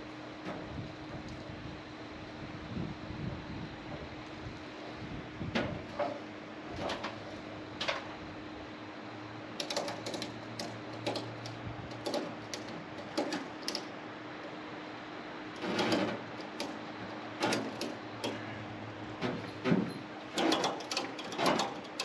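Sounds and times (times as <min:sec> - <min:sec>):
mechanical clicks and clatters: 0:09.6 - 0:14.5, 0:15.5 - 0:16.8, 0:17.4 - 0:18.5, 0:19.2 - 0:22.0.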